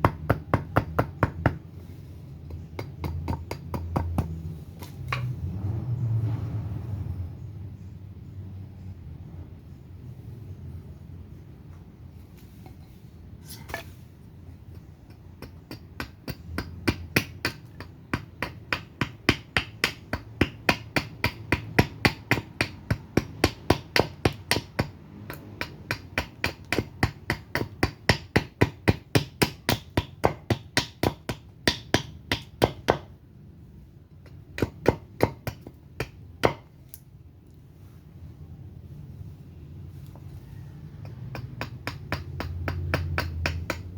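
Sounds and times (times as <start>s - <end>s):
axe chopping wood: 0.0s - 1.6s, 2.5s - 5.3s, 14.7s - 33.1s, 34.2s - 36.7s, 41.1s - 43.9s.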